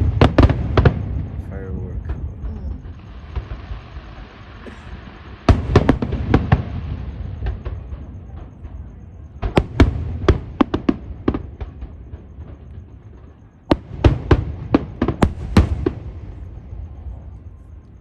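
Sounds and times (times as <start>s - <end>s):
low rumble: 0.0s - 13.9s
fireworks bangs: 0.0s - 17.9s.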